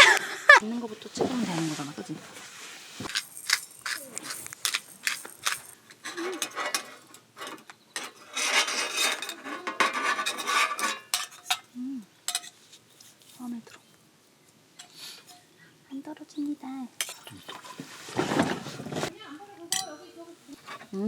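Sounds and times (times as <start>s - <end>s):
utensils scraping a dish: 1.0s - 11.7s, 12.3s - 12.6s, 19.7s - 21.0s.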